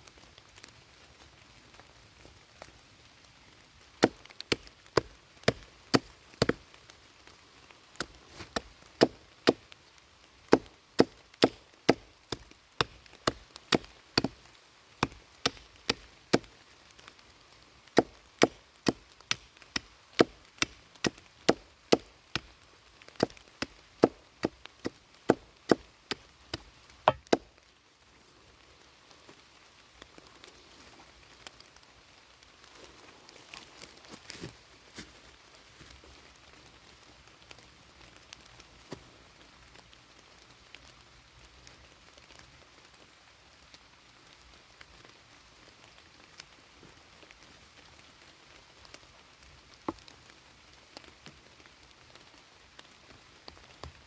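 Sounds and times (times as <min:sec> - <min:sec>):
axe chopping wood: 0:04.0 - 0:06.7, 0:08.0 - 0:09.7, 0:10.5 - 0:14.4, 0:15.0 - 0:16.5, 0:18.0 - 0:22.5, 0:23.2 - 0:27.5.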